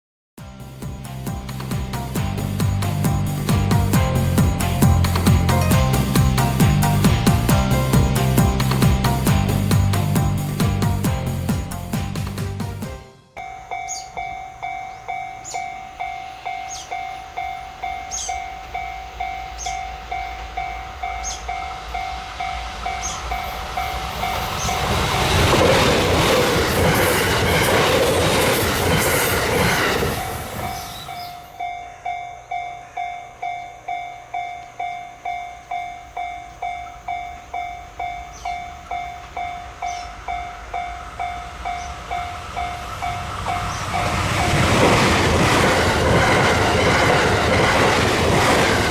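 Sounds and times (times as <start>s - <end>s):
train wheels rumbling on rail: 0.5s - 48.9s
level crossing warning bell ringing: 13.4s - 25.1s, 30.0s - 48.8s.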